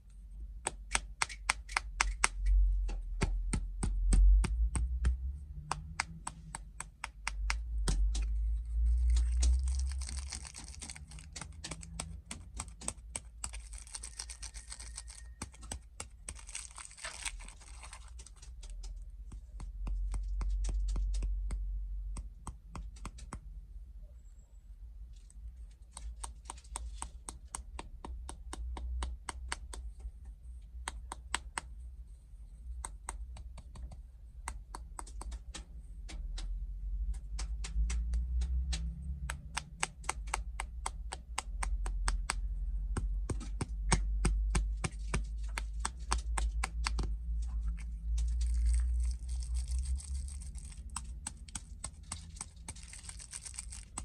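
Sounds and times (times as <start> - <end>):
snack packaging taps and clicks: 0.6 - 23.4, 25.9 - 29.9, 37.0 - 54.0
packaging crinkling and tearing: 8.8 - 18.9, 44.9 - 54.0.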